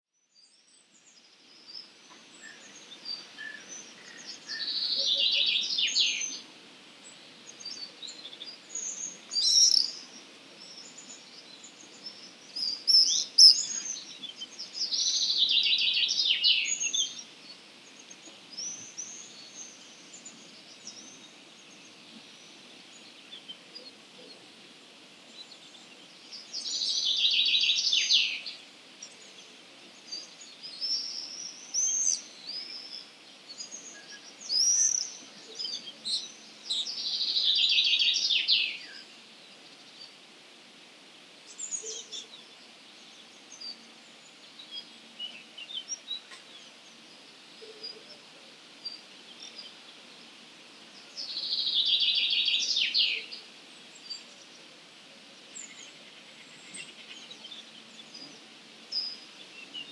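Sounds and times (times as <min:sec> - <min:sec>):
birds chirping and whistling: 0:08.7 - 0:10.1, 0:12.0 - 0:17.2.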